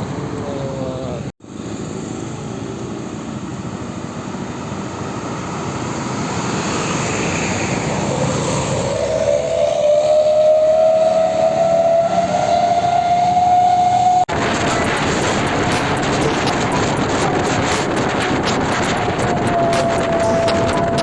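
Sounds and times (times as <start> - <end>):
bus engine: 0.0 - 21.0
air horn gliding upward: 7.8 - 21.0.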